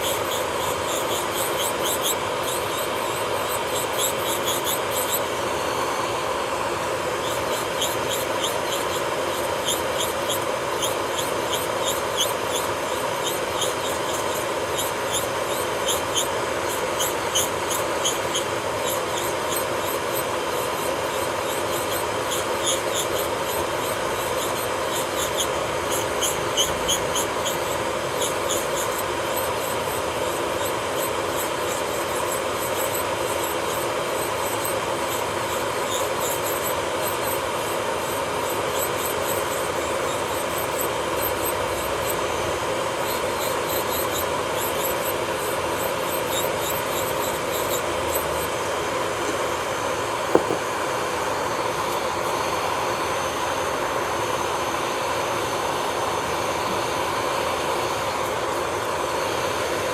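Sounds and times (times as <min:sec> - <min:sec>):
high squeaks: 0:00.0 - 0:06.1, 0:07.0 - 0:42.3, 0:43.0 - 0:49.5
electric nail drill whine: 0:00.0 - 0:59.9.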